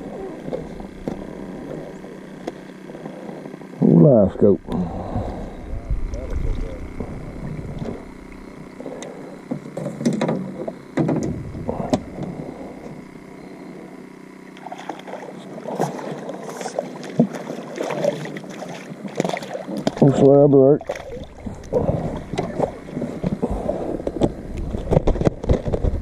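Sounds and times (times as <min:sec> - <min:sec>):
faint steady hum: 0:00.0 - 0:26.0
gear knocks and rustles: 0:24.1 - 0:26.0.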